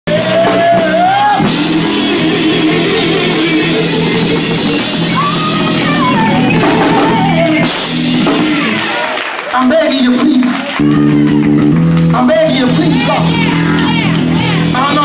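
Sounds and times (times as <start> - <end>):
gospel band playing: 0.0 - 15.0
guitar: 0.1 - 9.4, 10.0 - 15.0
drum kit: 0.1 - 15.0.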